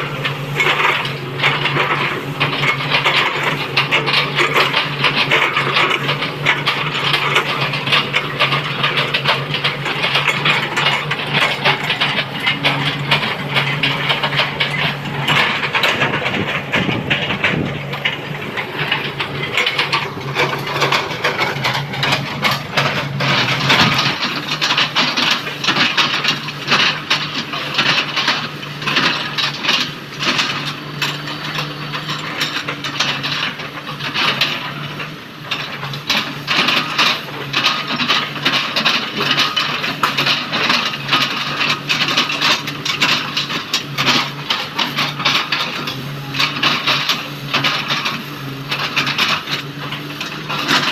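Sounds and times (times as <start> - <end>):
crackling and crunching of wood: 0.0 - 50.9
excavator diesel engine running: 0.0 - 50.9.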